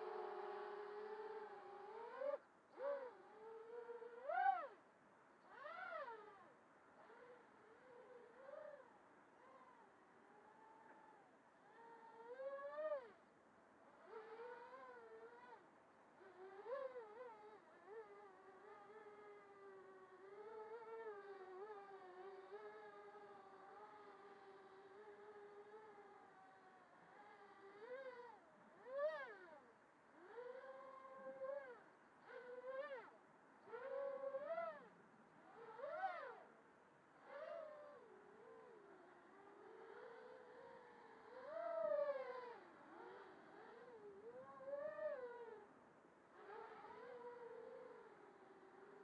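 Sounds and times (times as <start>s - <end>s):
quadcopter motors whining: 0.0s - 4.8s, 14.0s - 15.6s, 16.2s - 36.5s, 37.2s - 45.6s, 46.4s - 49.0s.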